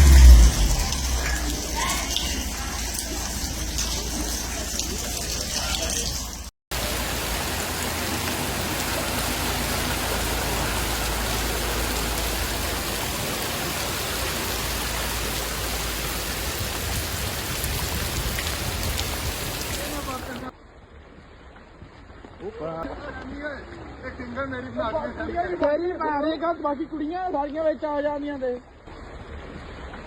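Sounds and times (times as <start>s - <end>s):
water rushing: 0.0s - 20.5s.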